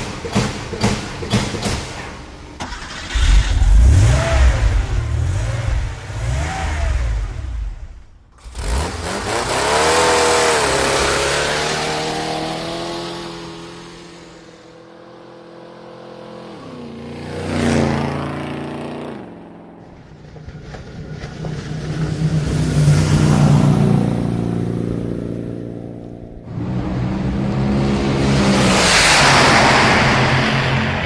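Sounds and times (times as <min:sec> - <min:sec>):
car engines revving and passing: 0:02.8 - 0:31.0.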